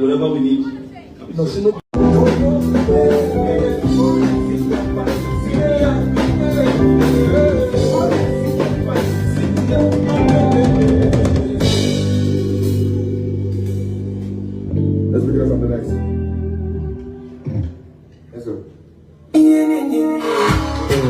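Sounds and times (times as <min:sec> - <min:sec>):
person singing: 0:02.0 - 0:13.3, 0:19.3 - 0:21.0
drum kit beat: 0:02.0 - 0:15.0, 0:19.4 - 0:21.0
live band playing: 0:02.0 - 0:18.1, 0:19.3 - 0:21.0.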